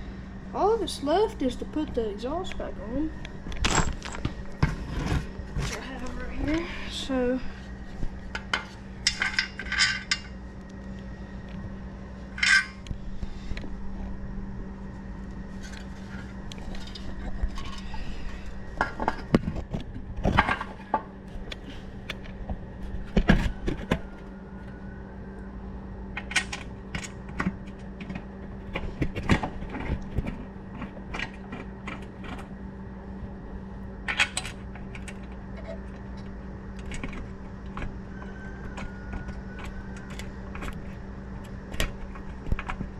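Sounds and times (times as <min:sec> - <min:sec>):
steady low hum: 0:00.0 - 0:42.9
metal tools clinking: 0:03.6 - 0:04.4, 0:09.0 - 0:10.3, 0:12.4 - 0:12.8.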